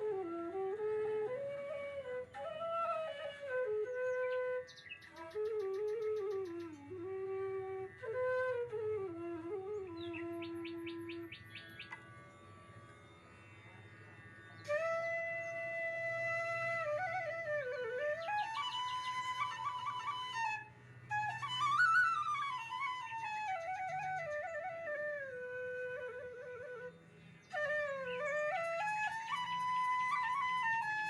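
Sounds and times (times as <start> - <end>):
sliding melody music: 0.0 - 26.9, 27.5 - 31.0.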